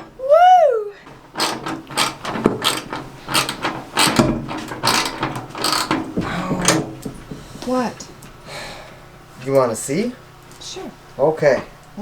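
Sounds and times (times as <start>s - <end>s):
ratchet wrench clicking: 1.1s - 6.8s.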